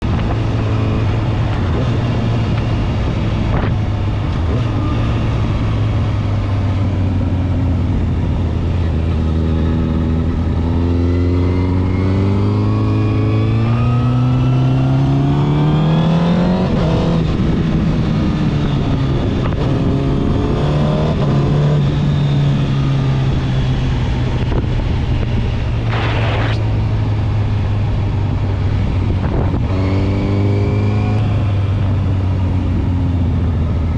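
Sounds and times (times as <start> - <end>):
motorcycle engine revving: 0.0 - 33.9
rush of noise: 23.3 - 32.8.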